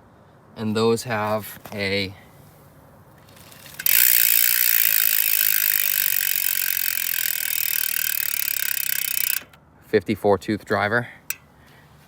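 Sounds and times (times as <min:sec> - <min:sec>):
bicycle hub freewheel clicking: 0:03.3 - 0:09.6.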